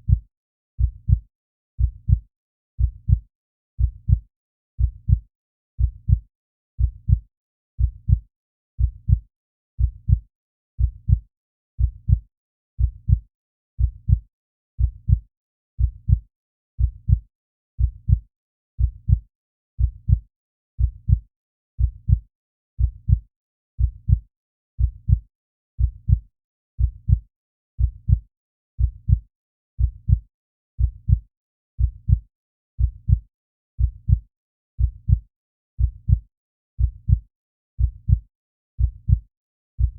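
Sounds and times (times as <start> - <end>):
heartbeat thumping: 0.8 - 1.2, 1.8 - 2.2, 2.8 - 3.2, 3.8 - 4.2, 4.8 - 5.2, 5.8 - 6.2, 6.8 - 7.2, 7.8 - 8.2, 8.8 - 9.2, 9.8 - 10.2, 10.8 - 11.2, 11.8 - 12.2, 12.8 - 13.2, 13.8 - 14.2, 14.8 - 15.2, 15.8 - 16.2, 16.8 - 17.2, 17.8 - 18.2, 18.8 - 19.2, 19.8 - 20.2, 20.8 - 21.2, 21.8 - 22.2, 22.8 - 23.2, 23.8 - 24.2, 24.8 - 25.2, 25.8 - 26.2, 26.8 - 27.2, 27.8 - 28.2, 28.8 - 29.2, 29.8 - 30.2, 30.8 - 31.2, 31.8 - 32.2, 32.8 - 33.2, 33.8 - 34.2, 34.8 - 35.2, 35.8 - 36.2, 36.8 - 37.2, 37.8 - 38.2, 38.8 - 39.2.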